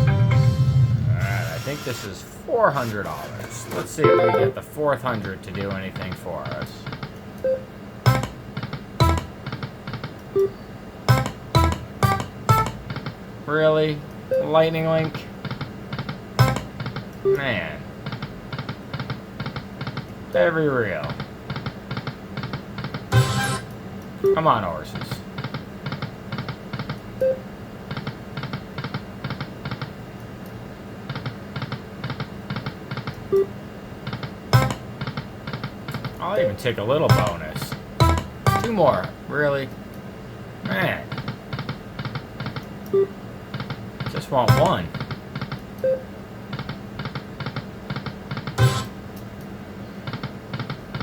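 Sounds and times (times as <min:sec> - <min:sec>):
slot machine game music: 0:00.0 - 0:00.8, 0:03.9 - 0:04.6, 0:09.0 - 0:09.3, 0:11.1 - 0:12.8, 0:23.1 - 0:23.6, 0:37.1 - 0:37.4, 0:38.0 - 0:38.9, 0:44.5 - 0:44.8, 0:48.6 - 0:48.9
slot machine electronic chimes: 0:04.0 - 0:04.6, 0:23.1 - 0:23.6, 0:38.0 - 0:38.8, 0:44.5 - 0:44.8, 0:48.6 - 0:48.9.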